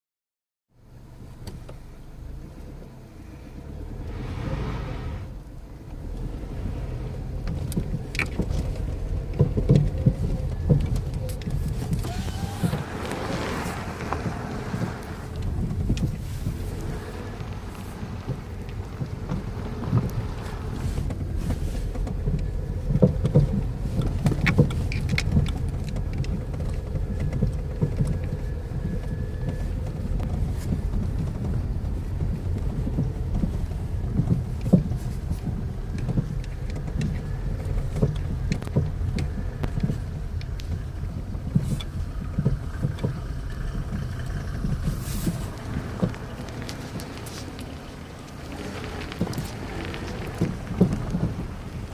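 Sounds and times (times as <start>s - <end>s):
low road rumble: 0.7s - 51.9s
suspension knocking: 5.4s - 51.9s.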